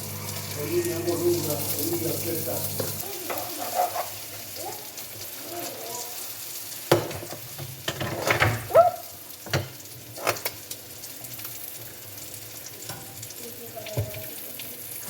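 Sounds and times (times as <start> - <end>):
food sizzling in a frying pan: 0.0 - 15.0.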